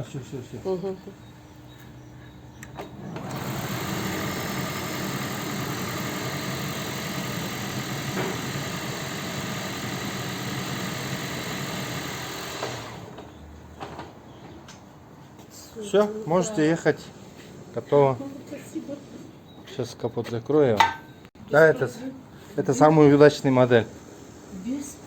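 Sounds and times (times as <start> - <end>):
car engine starting and running: 2.8 - 13.4.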